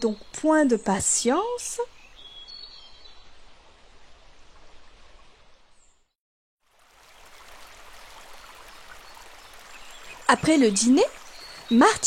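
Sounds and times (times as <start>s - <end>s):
rushing stream: 6.6s - 12.0s.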